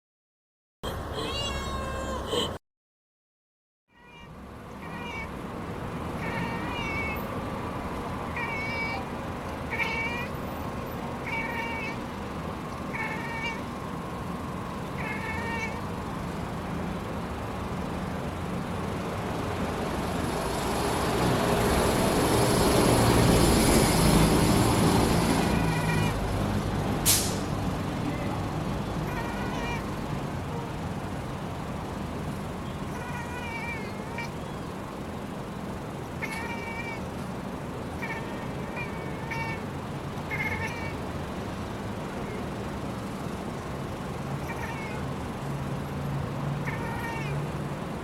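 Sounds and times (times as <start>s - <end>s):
cat chirping: 1.1s - 2.5s, 4.0s - 5.3s, 6.2s - 7.2s, 8.3s - 9.1s, 9.7s - 10.4s, 11.2s - 12.1s, 12.8s - 13.7s, 15.0s - 15.8s, 25.4s - 26.2s, 29.0s - 30.8s, 32.8s - 34.7s, 36.2s - 37.1s, 37.9s - 39.7s, 40.3s - 41.0s, 44.4s - 45.1s, 46.6s - 47.4s.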